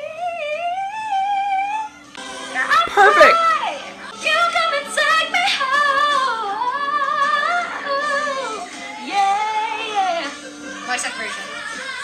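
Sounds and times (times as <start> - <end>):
woman singing a soulful ballad: 0.0 - 1.9, 4.1 - 12.0.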